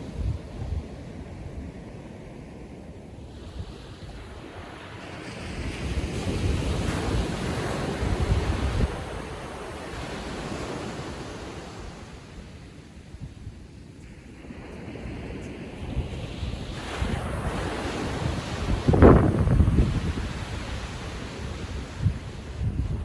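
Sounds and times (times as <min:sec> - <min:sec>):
wind rumbling on microphone: 0:00.0 - 0:23.0
wave breaking on beach: 0:14.3 - 0:23.0.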